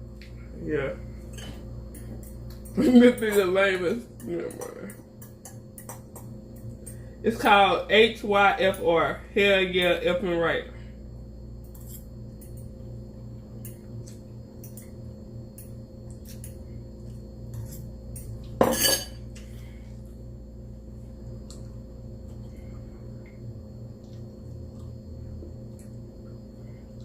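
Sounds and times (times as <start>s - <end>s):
cutlery clinking against dish: 18.6s - 19.2s.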